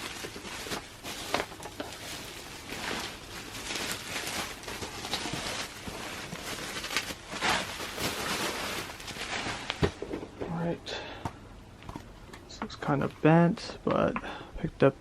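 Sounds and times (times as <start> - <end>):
rustling crinkling wrap: 0.0 - 10.1.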